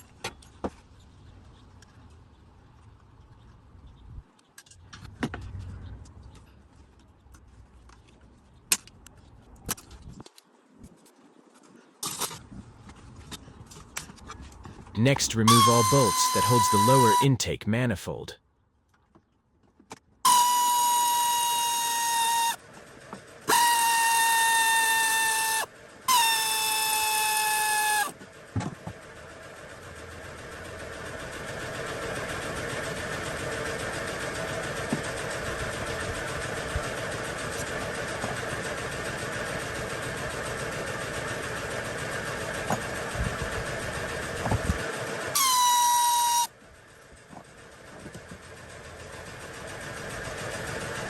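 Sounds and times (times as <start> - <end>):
power tool motor whine: 20.3 - 22.6, 45.4 - 46.5.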